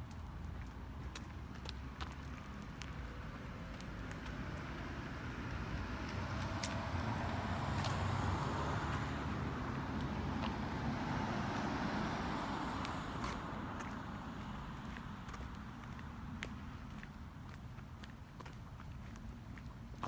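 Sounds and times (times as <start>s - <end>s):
car passing by: 3.3s - 16.0s.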